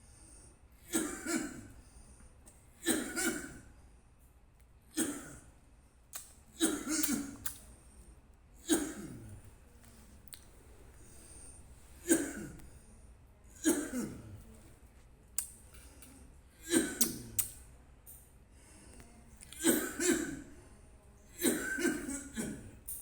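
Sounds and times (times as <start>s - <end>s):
man coughing: 0.9s - 1.7s, 2.8s - 3.6s, 5.0s - 5.4s, 6.6s - 7.4s, 8.7s - 9.4s, 12.0s - 12.6s, 13.6s - 14.4s, 19.6s - 20.4s, 21.4s - 22.8s.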